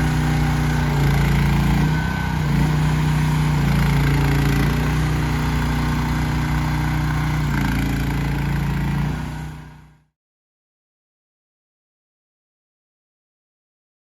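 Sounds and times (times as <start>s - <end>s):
small excavator engine running: 0.0s - 10.1s.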